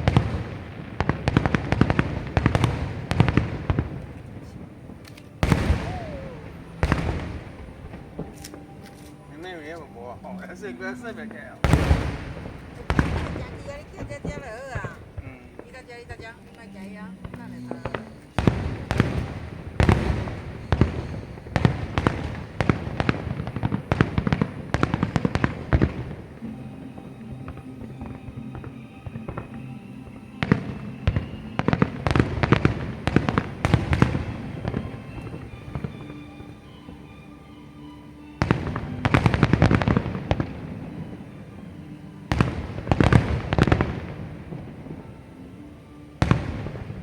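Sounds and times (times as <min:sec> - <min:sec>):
big fireworks booms: 0:00.0 - 0:37.2, 0:38.2 - 0:47.0
fireworks sharp bangs: 0:00.0 - 0:37.2, 0:38.2 - 0:47.0.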